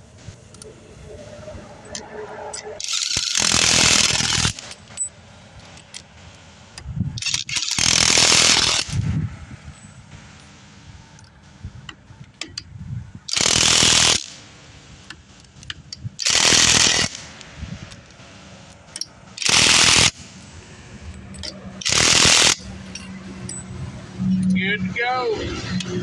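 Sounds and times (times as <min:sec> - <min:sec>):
impact wrench bursts: 0:02.8 - 0:09.1, 0:13.3 - 0:24.6.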